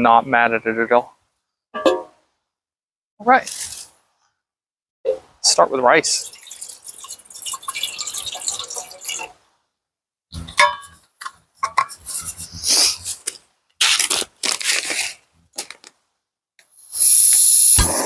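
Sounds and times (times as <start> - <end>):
rustling and scraping: 3.4 - 4.2, 11.6 - 16.0.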